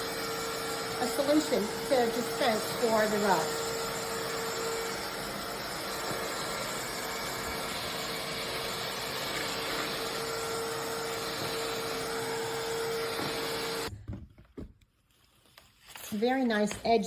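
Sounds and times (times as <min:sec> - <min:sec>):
vacuum mop running: 0:00.0 - 0:14.2.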